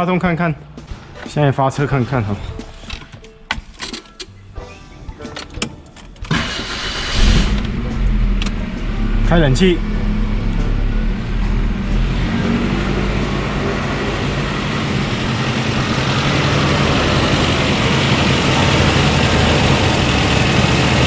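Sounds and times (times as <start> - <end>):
car engine idling: 6.1 - 21.0.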